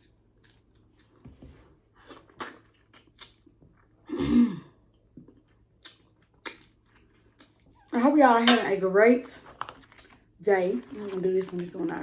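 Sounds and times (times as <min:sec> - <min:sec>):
person chewing wetly: 0:00.0 - 0:04.1, 0:04.8 - 0:07.9, 0:09.4 - 0:11.1.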